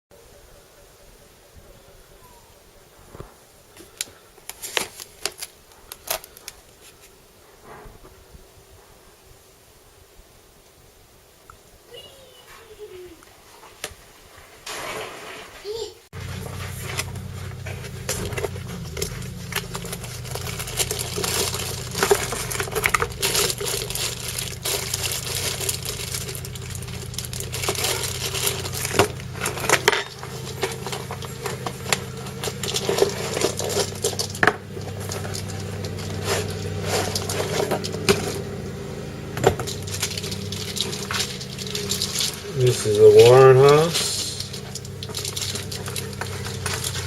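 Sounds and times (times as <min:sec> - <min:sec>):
objects and packaging clattering: 0:03.1 - 0:08.0, 0:13.8 - 0:47.0
steady low hum: 0:16.2 - 0:47.0.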